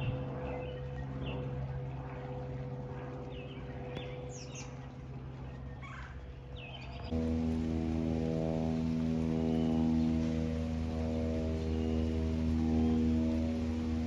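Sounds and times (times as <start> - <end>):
small birds chirping: 0.0 - 7.2, 8.8 - 14.0
distant aircraft engine drone: 0.0 - 14.0.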